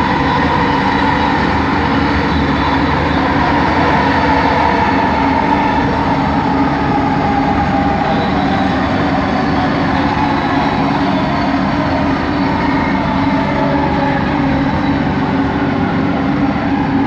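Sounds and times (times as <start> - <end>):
train motors whining: 0.0 - 17.0
train wheel and running noise: 0.0 - 17.0.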